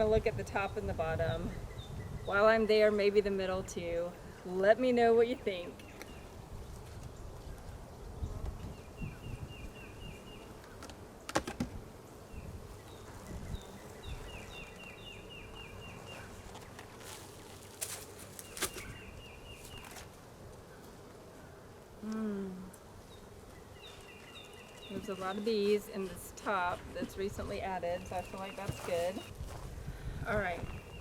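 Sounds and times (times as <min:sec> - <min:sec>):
honeybees buzzing: 0:00.0 - 0:31.0
bird chirping: 0:12.2 - 0:16.8, 0:18.4 - 0:20.0.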